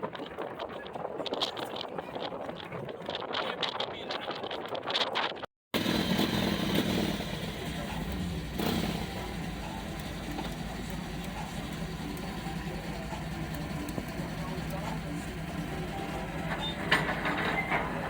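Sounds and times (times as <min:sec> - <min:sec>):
engine running: 0:05.8 - 0:18.0.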